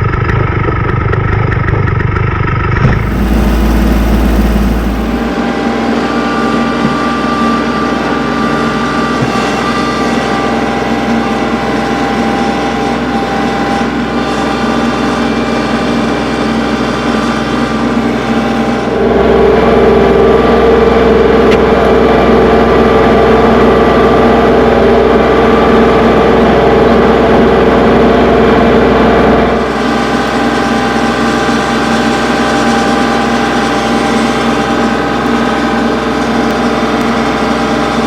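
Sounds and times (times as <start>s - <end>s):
engine running: 0.0s - 38.0s
steady hum: 2.8s - 23.3s.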